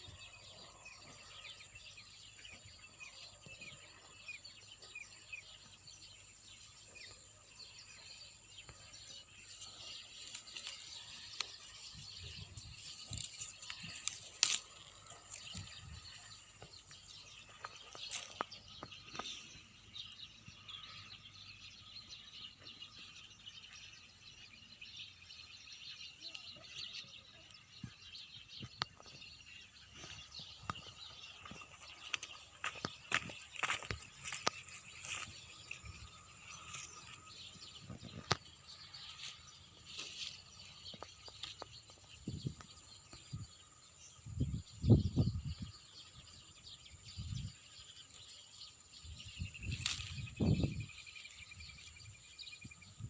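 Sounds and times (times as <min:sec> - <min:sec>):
small birds chirping: 0:00.0 - 0:53.0.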